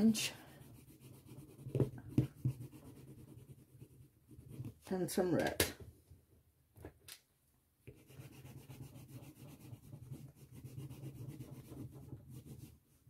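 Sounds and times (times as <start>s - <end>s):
pastel scratching on paper: 0.0s - 4.8s, 7.9s - 12.8s.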